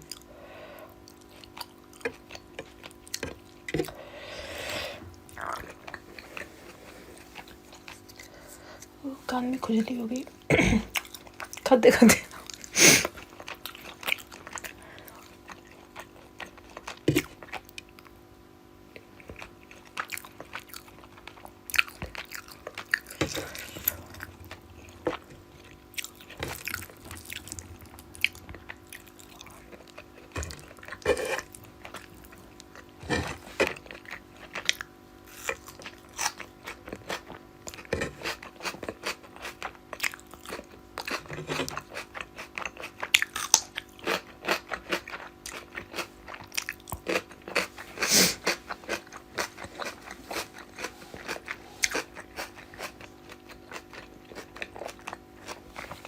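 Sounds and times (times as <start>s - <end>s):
faint hum: 0.0s - 56.0s
close chewing and mouth smacks: 1.0s - 4.0s, 5.1s - 9.0s, 10.9s - 11.7s, 12.3s - 18.2s, 18.9s - 56.0s.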